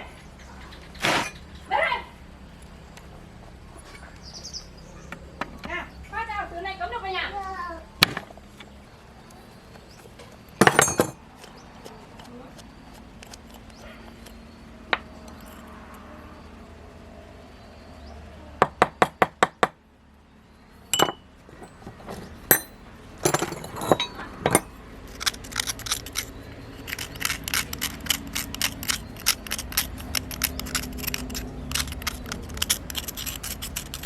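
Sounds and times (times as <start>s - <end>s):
metal tools clinking: 10.6s - 11.2s, 20.9s - 34.0s.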